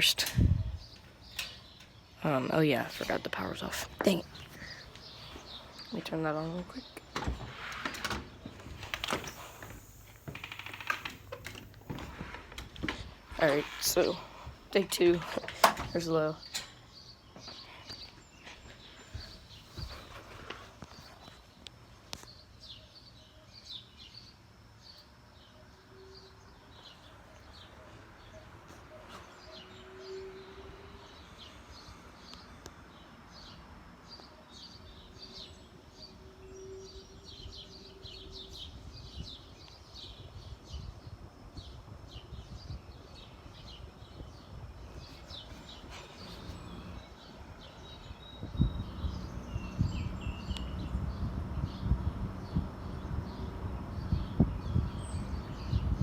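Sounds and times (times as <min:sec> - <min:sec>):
small birds chirping: 0:00.0 - 0:56.0
low rumbling: 0:45.6 - 0:56.0
box fan running: 0:48.4 - 0:56.0.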